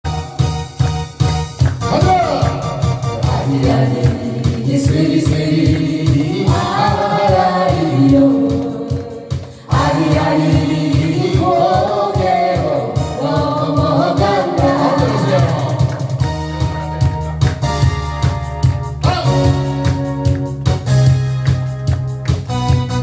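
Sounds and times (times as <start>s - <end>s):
folk singing over a beat: 2.6s - 16.2s.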